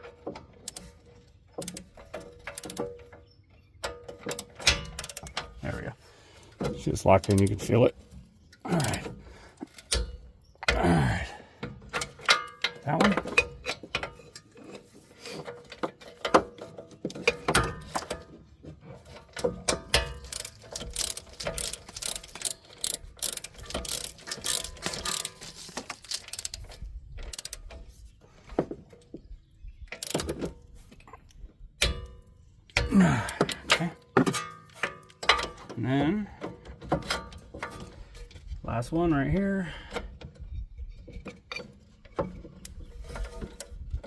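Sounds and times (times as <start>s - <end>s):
socket ratchet clicking: 20.0s - 25.4s.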